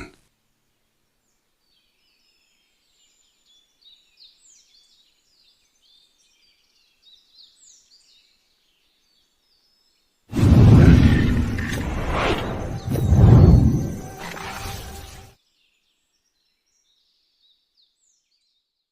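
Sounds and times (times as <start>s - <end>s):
faint birds chirping: 0.0s - 18.9s.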